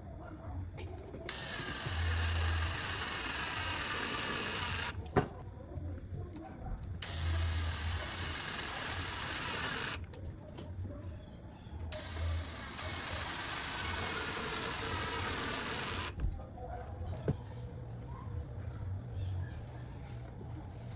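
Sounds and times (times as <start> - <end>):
bike ratchet clicking whir: 1.3 - 5.0, 7.0 - 10.1, 11.9 - 16.2.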